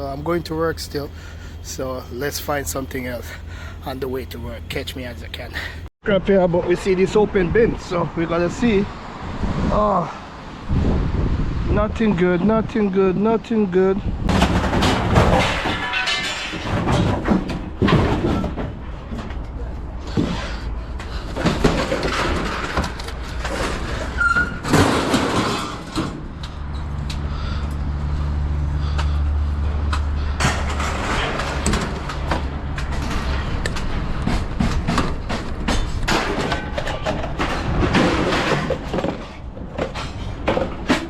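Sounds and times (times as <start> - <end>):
vehicle engine humming: 0.0 - 5.9, 25.8 - 37.4
items clattering and rustling: 14.3 - 26.8, 30.4 - 41.0.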